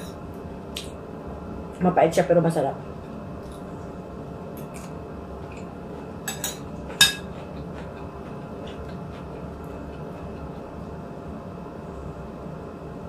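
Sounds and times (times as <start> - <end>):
low background hum: 0.0 - 13.0
dishes clinking: 6.2 - 7.5.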